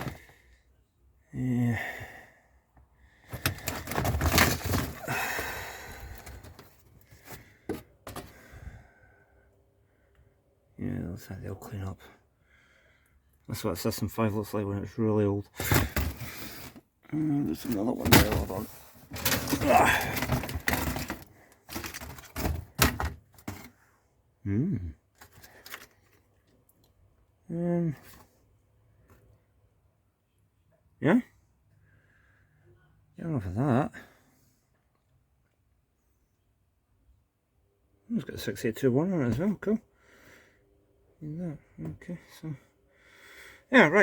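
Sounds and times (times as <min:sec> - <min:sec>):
hard items clattering and rustling: 0:00.0 - 0:00.4, 0:03.2 - 0:08.7, 0:15.6 - 0:23.8, 0:25.2 - 0:26.4.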